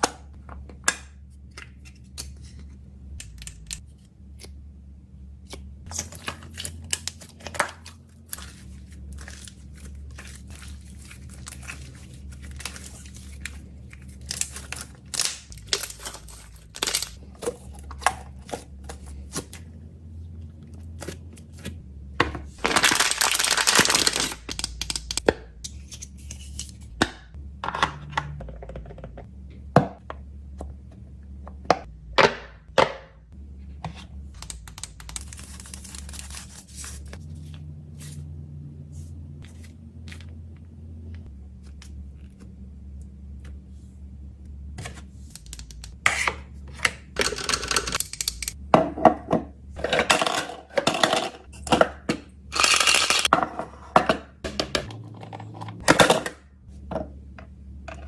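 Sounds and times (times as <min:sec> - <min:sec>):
packaging tearing: 0:22.6 - 0:25.0
packaging clicks and crinkling: 0:22.6 - 0:25.2.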